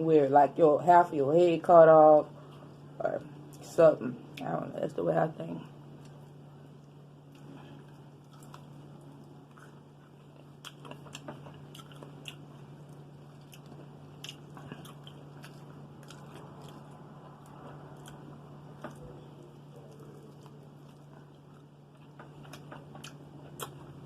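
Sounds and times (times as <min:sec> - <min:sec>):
steady low hum: 0:00.0 - 0:24.0
chewing: 0:06.0 - 0:24.0.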